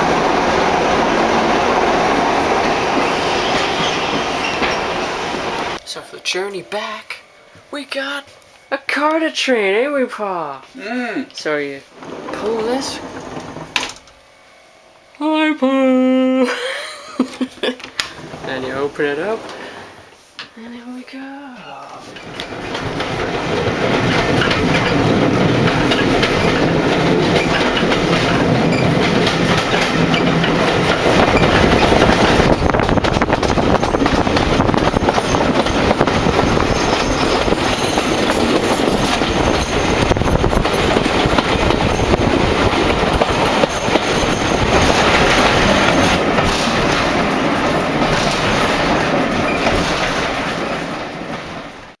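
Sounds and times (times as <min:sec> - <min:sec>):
wheels clattering over rail joints: 0:00.0 - 0:05.8, 0:11.9 - 0:14.2, 0:18.0 - 0:19.8, 0:22.0 - 0:52.0
train rumbling: 0:00.0 - 0:08.2, 0:11.8 - 0:15.0, 0:18.1 - 0:20.0, 0:21.9 - 0:52.0.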